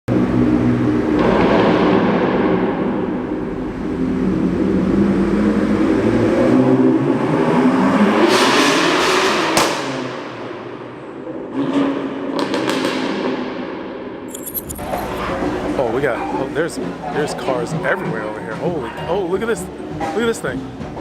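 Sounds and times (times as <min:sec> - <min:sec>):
car engine revving: 0:00.1 - 0:13.8.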